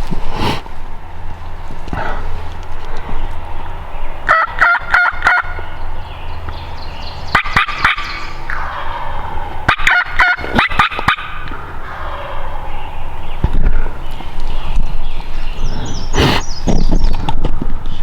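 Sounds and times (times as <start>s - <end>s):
turkey gobbling: 0.9s - 14.7s.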